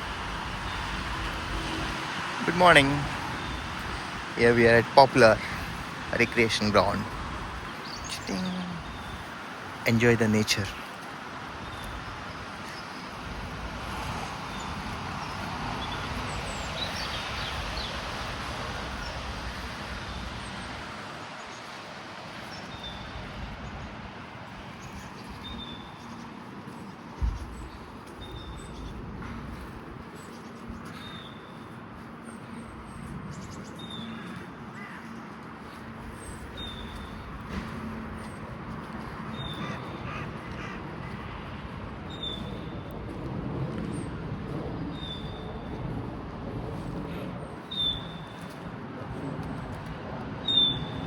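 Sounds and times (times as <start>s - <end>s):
small birds chirping: 0.0s - 42.9s, 46.8s - 48.6s
distant city traffic hum: 0.0s - 51.0s
crow cawing: 34.1s - 35.3s, 39.3s - 41.4s.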